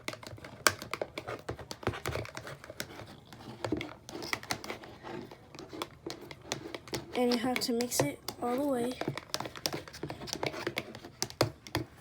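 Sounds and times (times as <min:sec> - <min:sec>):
utensil tapping container while stirring: 0:05.8 - 0:11.9.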